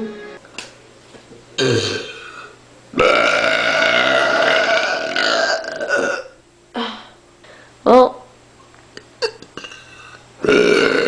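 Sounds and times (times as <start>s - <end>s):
person burping: 1.6s - 6.4s, 9.2s - 11.0s.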